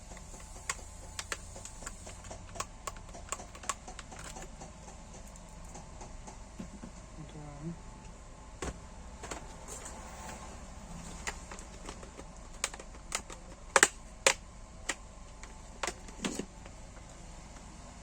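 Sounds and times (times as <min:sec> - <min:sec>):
sharp plastic clicks and taps: 0:00.2 - 0:06.4, 0:11.3 - 0:16.1.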